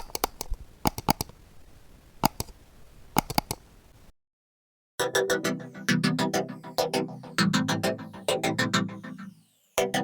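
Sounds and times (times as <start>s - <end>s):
sharp clicks and taps: 0.0s - 1.4s, 2.2s - 3.7s
faint room hiss: 0.0s - 4.1s.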